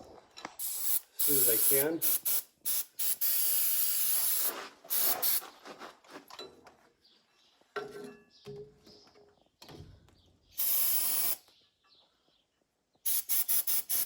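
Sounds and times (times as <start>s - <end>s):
aerosol can spraying: 0.6s - 5.4s, 10.6s - 11.4s, 13.1s - 14.0s.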